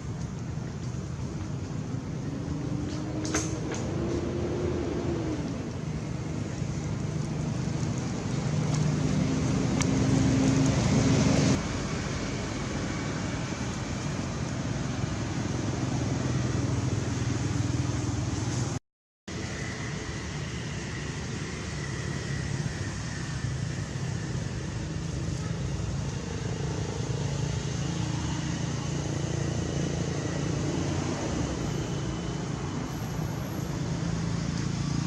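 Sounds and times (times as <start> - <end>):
road noise: 0.0 - 35.0
vehicle engine humming: 0.0 - 35.0.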